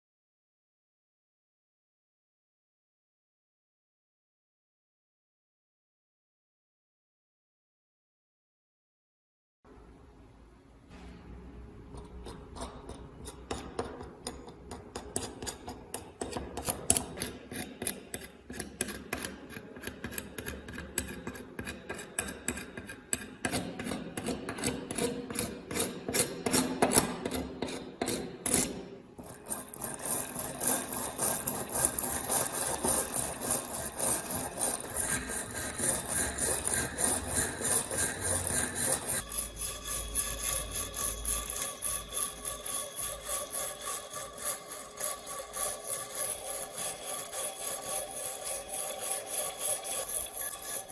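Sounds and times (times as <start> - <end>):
hand filing a knife: 12.3 - 50.9.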